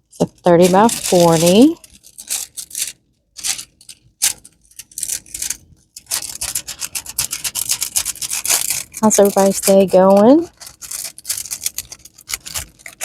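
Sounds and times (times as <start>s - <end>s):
packaging rustling and crinkling: 0.1s - 13.0s.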